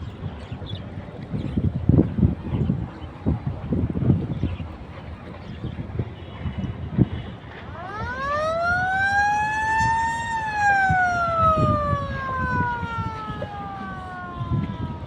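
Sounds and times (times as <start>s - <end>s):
wind rumble on microphone: 0.0s - 15.0s
siren wailing: 7.7s - 15.0s.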